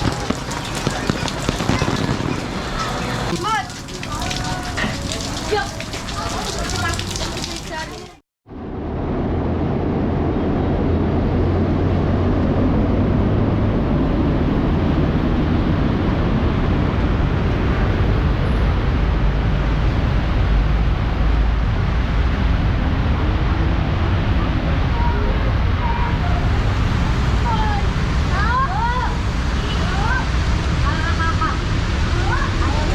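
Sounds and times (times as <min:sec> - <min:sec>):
heavy rain: 0:00.0 - 0:08.2, 0:11.2 - 0:32.9
low rumble: 0:08.5 - 0:29.6.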